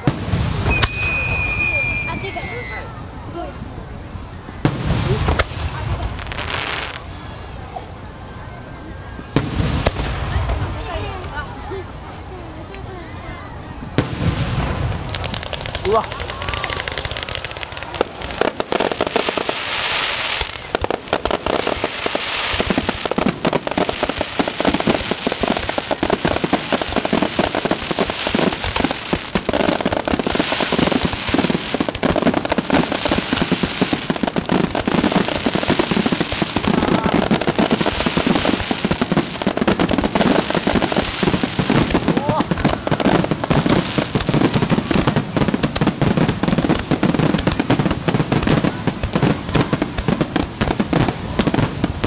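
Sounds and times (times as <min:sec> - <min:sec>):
crackling hiss of fireworks: 0:00.0 - 0:52.0.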